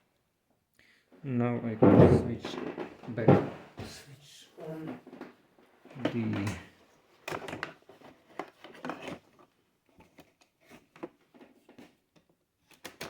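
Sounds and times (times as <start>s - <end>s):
tools handled on a workbench: 6.0s - 9.4s.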